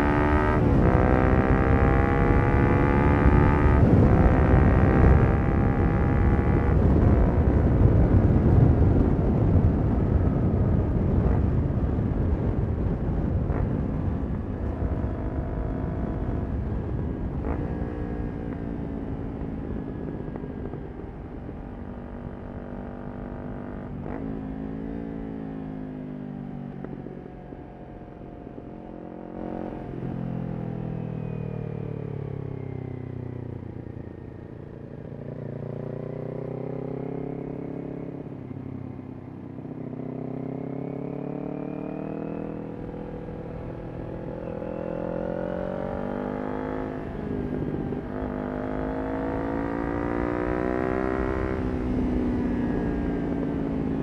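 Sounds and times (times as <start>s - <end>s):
wind rush: 0.0s - 25.2s
motorcycle engine: 0.0s - 54.0s.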